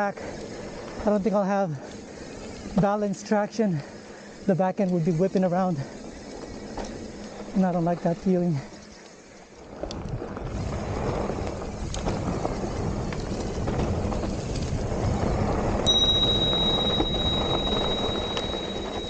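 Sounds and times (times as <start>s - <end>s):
bike rattling: 0.0s - 19.0s
bike tyres rolling on dirt: 0.0s - 19.0s
high-pitched squeal: 15.9s - 19.0s.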